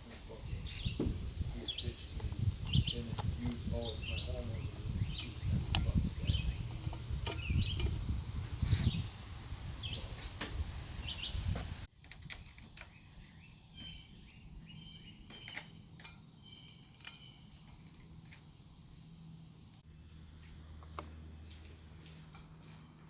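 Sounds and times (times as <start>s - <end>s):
low rumbling background: 0.0s - 11.9s
small birds chirping: 0.2s - 11.8s, 12.4s - 20.5s.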